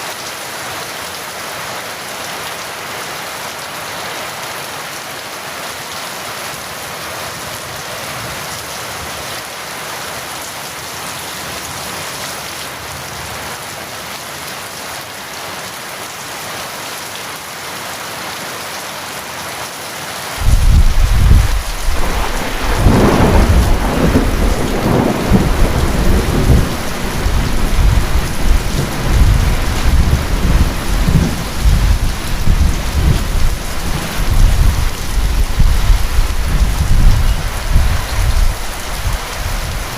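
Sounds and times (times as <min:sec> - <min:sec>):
steady rain: 0:00.0 - 0:39.9
thunder crack and rumble: 0:20.4 - 0:39.9.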